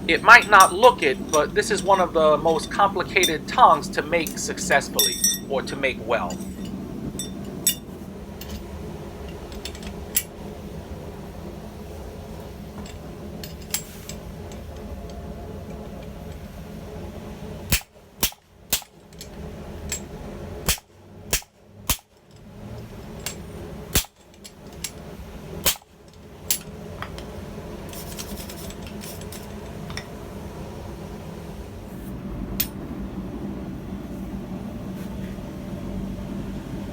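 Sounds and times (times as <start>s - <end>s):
steady low hum: 0.0s - 36.9s
hammer striking steel on anvil: 0.1s - 7.8s.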